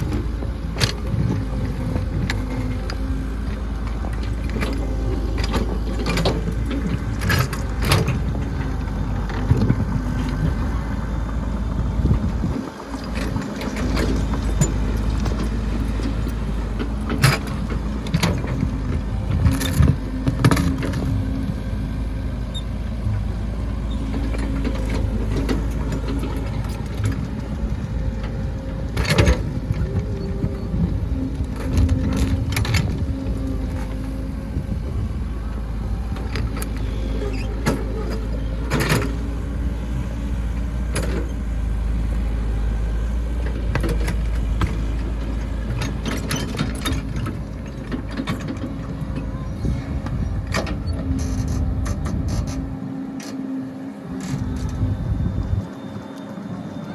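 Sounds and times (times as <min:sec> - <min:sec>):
excavator engine running: 0:00.0 - 0:56.9.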